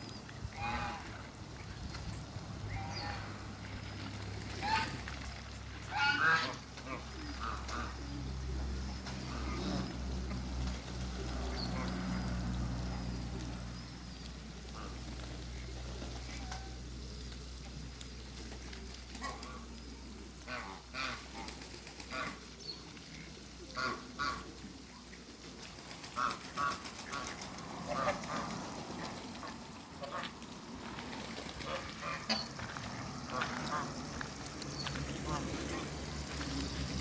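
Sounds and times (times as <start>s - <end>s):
ducks quacking: 0.4s - 1.5s, 2.7s - 10.5s, 14.6s - 16.9s, 18.8s - 24.9s, 26.0s - 37.0s.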